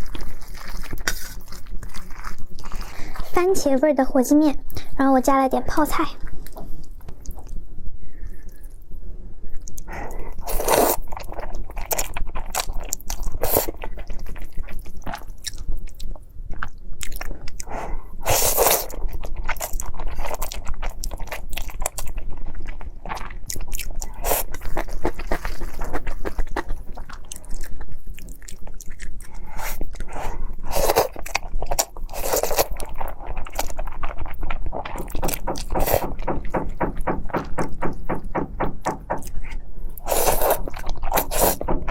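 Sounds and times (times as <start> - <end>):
chewing with wet clicks: 6.4 - 7.6, 9.5 - 9.9, 11.0 - 17.7, 18.8 - 36.9.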